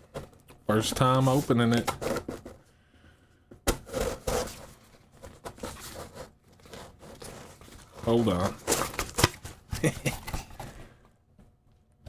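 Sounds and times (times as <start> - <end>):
cardboard scraping and tearing: 3.8 - 10.8.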